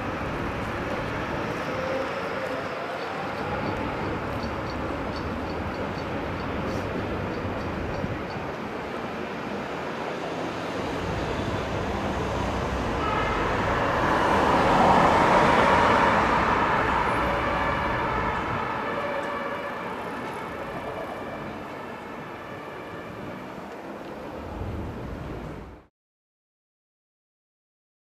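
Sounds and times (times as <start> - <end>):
road noise: 0.0 - 25.9
emergency vehicle siren: 0.4 - 5.4, 10.8 - 23.8.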